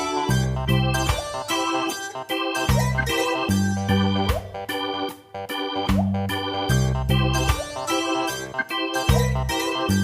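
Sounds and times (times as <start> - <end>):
bass line: 0.0 - 1.4, 2.7 - 7.8, 8.4 - 10.0
bright keyboard tune: 0.0 - 10.0.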